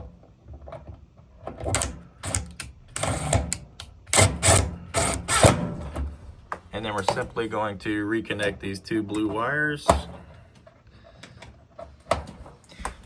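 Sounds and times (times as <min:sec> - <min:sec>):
screwdriver scraping and clicking: 0:01.5 - 0:06.0.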